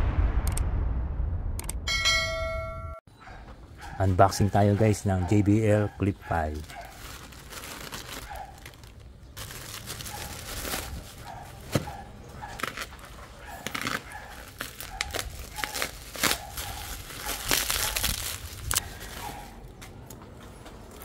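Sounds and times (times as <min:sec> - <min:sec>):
packaging crinkling and rustling: 0:06.5 - 0:19.5.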